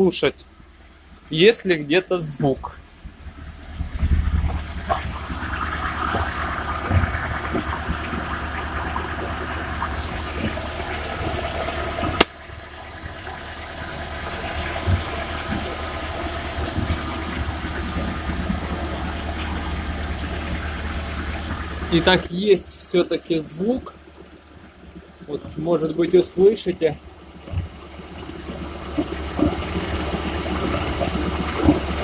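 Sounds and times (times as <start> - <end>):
car engine running: 0.0 - 32.0
driveline knocking: 3.0 - 22.3.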